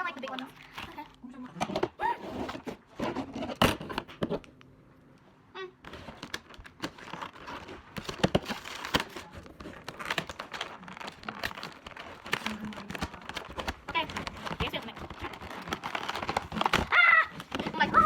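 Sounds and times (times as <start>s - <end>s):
packaging crinkling and tearing: 5.9s - 18.0s.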